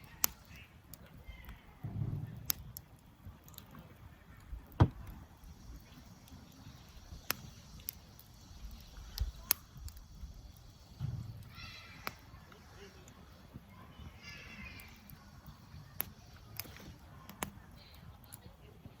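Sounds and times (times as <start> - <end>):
wood fire crackling: 0.0 - 19.0
sharp pops: 4.6 - 13.6.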